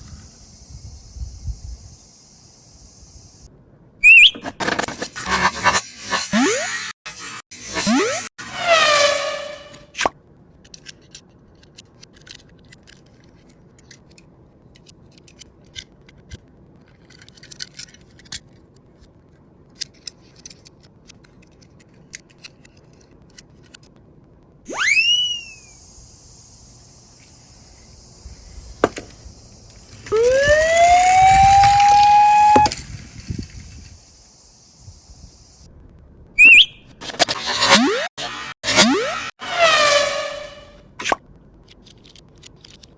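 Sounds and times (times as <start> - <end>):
steady hiss: 0.0 - 3.5, 25.2 - 30.1, 31.2 - 35.7
falling whistle: 4.0 - 4.6, 24.7 - 27.6, 30.0 - 32.8, 36.4 - 36.9, 38.8 - 40.8
toy cars clicking and rattling: 10.6 - 23.9, 41.6 - 42.9
police siren wail: 30.1 - 32.7.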